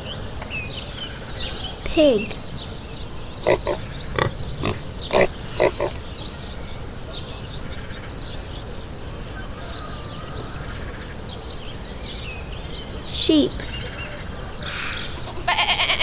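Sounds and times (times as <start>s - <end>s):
small birds chirping: 0.2s - 8.8s
pig grunting: 3.4s - 6.1s.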